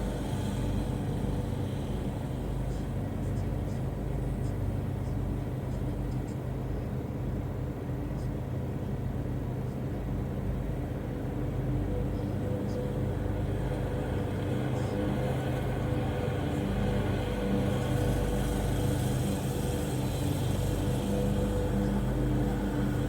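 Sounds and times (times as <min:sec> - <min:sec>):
heater fan blowing air: 0:00.0 - 0:23.0
faint steady tone: 0:11.2 - 0:23.0.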